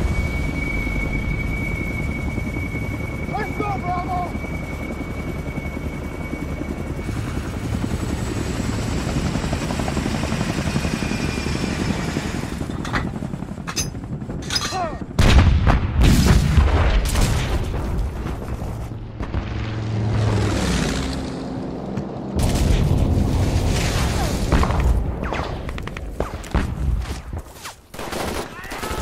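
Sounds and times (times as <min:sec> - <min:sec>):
helicopter rotor noise: 0:00.0 - 0:15.2, 0:19.7 - 0:23.2
loud explosion: 0:15.2 - 0:18.4
gunshots: 0:27.9 - 0:29.0.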